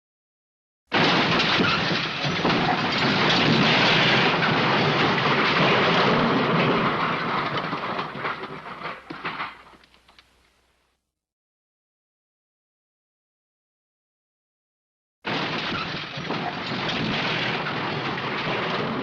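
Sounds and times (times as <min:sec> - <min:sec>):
clattering rumbling crash: 0:00.9 - 0:10.4, 0:15.3 - 0:19.0.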